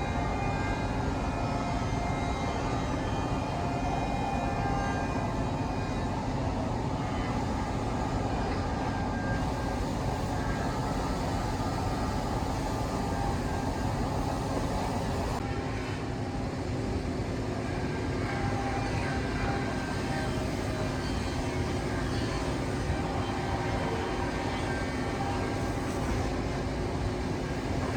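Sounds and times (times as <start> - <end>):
cnc router drone: 0.0 - 27.9
machine whine: 0.0 - 27.9.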